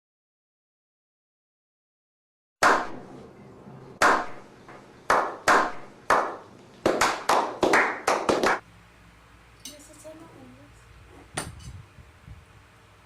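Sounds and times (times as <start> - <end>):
hand claps: 2.6 - 3.0, 4.0 - 8.6.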